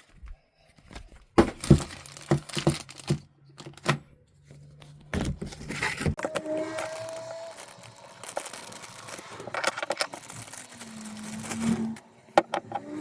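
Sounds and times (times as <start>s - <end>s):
plastic or paper crinkling: 1.4s - 3.8s, 4.6s - 12.0s.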